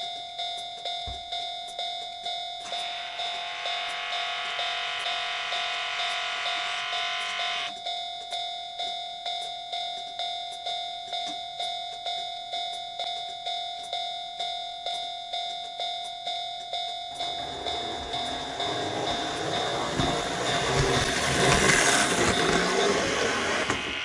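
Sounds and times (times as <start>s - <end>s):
crossing warning signal ringing: 2.2s - 7.7s, 13.9s - 24.0s
higher dense ringing: 17.1s - 24.0s.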